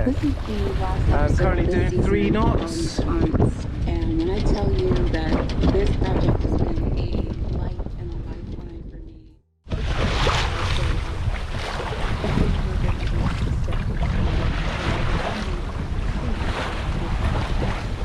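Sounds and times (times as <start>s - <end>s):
sea water rushing and splashing: 0.0s - 2.0s, 9.7s - 18.0s
wind buffeting microphone: 0.0s - 18.0s.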